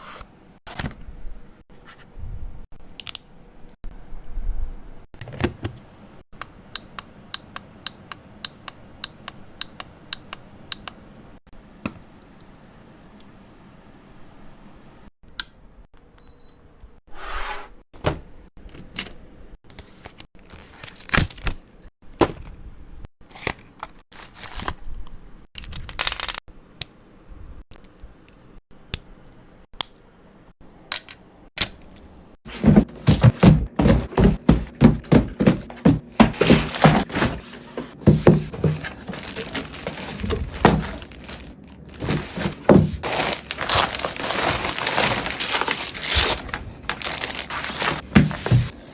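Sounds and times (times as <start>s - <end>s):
packaging crinkling: 38.5s - 48.7s.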